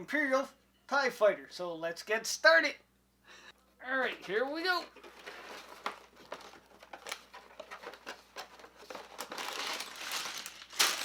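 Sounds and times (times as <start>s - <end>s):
plastic bags crinkling: 5.0s - 11.0s.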